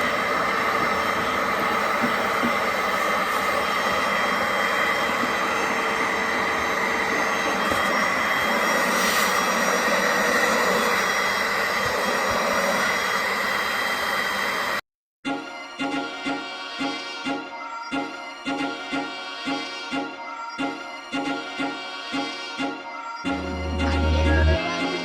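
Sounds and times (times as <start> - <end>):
vacuum motor whine: 0.0 - 14.7
music: 15.2 - 25.0.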